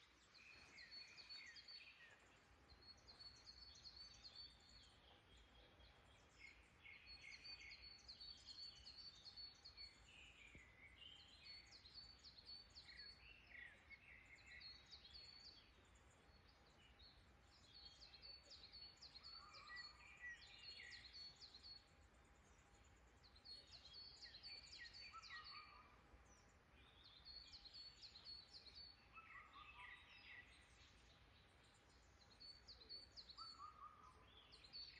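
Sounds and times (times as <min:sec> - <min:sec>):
songbirds trilling and chirping: 0:00.0 - 0:34.9.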